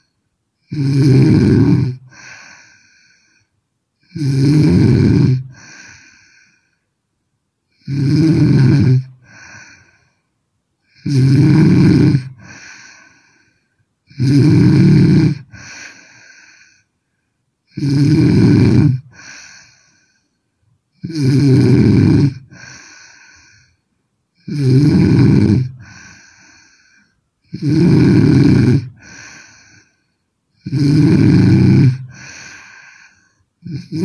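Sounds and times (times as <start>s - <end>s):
woman snoring loudly: 0.6s - 3.2s, 4.0s - 6.4s, 7.8s - 10.0s, 10.9s - 13.4s, 14.1s - 16.8s, 17.7s - 20.0s, 21.0s - 23.7s, 24.4s - 29.9s, 30.6s - 34.0s.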